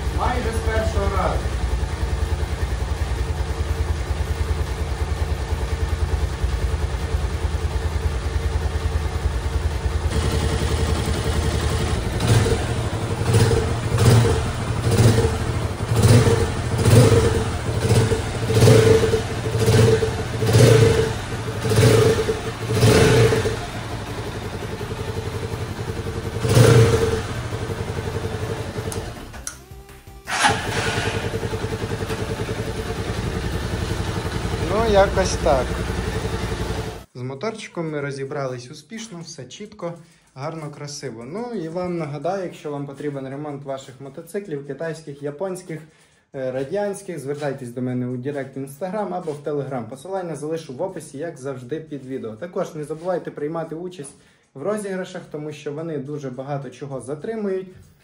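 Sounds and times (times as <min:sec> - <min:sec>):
motorcycle engine idling: 0:00.0 - 0:37.1
motorcycle throttle blips: 0:07.8 - 0:29.4.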